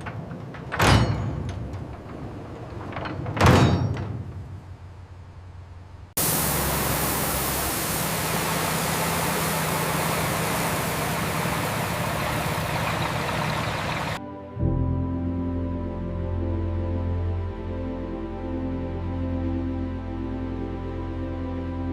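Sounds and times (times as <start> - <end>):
steady rushing noise: 4.0 - 14.2.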